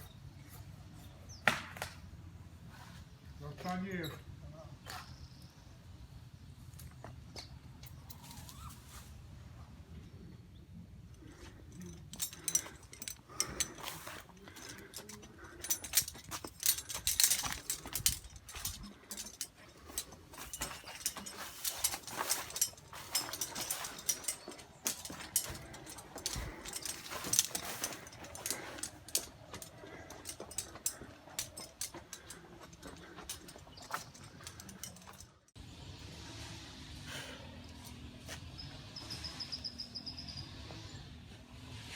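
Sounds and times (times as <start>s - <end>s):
clicks rattles and knocks: 11.3s - 35.5s.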